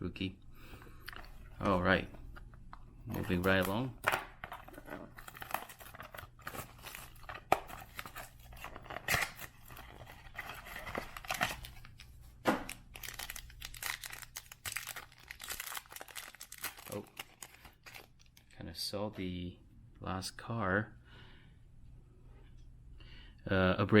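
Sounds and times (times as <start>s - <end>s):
wrapper tearing and crinkling: 3.2s - 18.6s.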